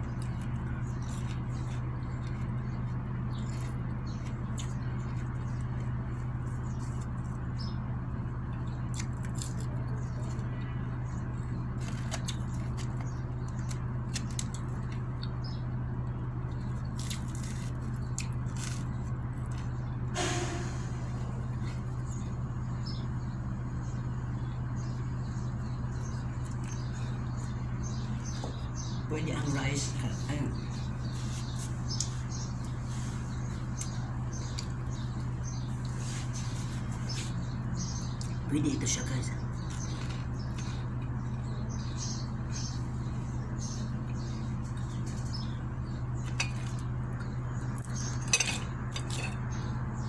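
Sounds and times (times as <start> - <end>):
chewing: 0.0 - 19.8, 39.4 - 43.0
steady low hum: 0.0 - 50.0.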